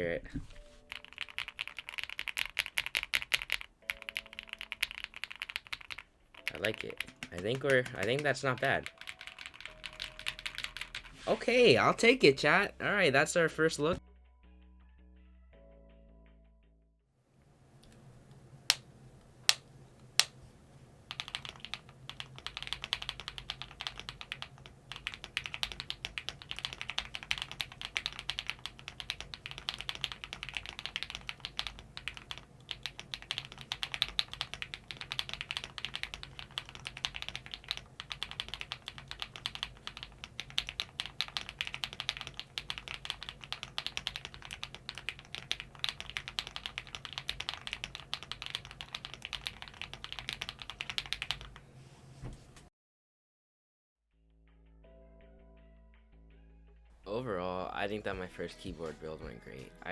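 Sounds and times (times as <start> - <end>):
mechanical keyboard typing: 0.9 - 11.1, 21.1 - 51.6.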